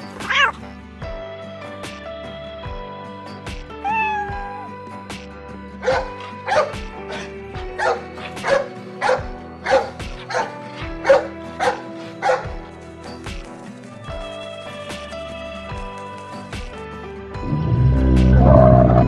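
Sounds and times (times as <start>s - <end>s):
background music: 0.0s - 19.0s
dog barking: 7.8s - 12.4s.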